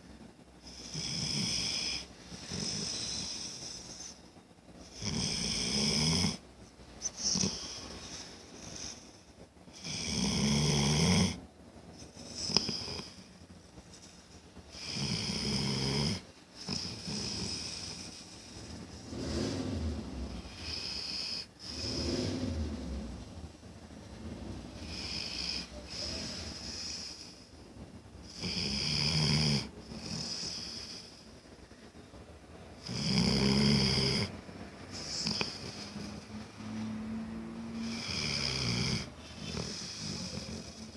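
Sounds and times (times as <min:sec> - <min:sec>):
soft breath: 0:24.2 - 0:27.6, 0:39.2 - 0:40.9
person snoring: 0:32.8 - 0:34.3, 0:37.8 - 0:40.9.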